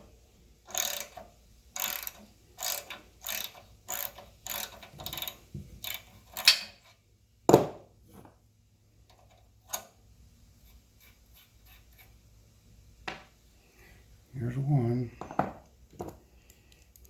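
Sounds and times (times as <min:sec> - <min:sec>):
ratchet wrench clicking: 0:00.7 - 0:07.0.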